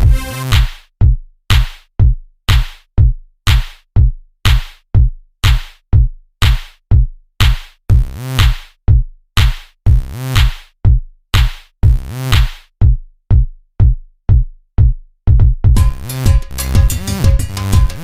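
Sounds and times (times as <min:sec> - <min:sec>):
synth notes: 0:00.0 - 0:00.6, 0:15.8 - 0:18.0
electronic music: 0:00.0 - 0:00.8, 0:15.8 - 0:18.0
punchy kick drums: 0:00.0 - 0:18.0.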